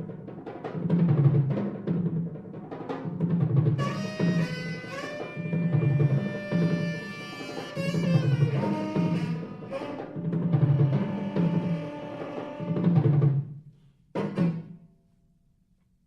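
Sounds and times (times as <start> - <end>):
tenor saxophone held notes: 3.8 - 12.9.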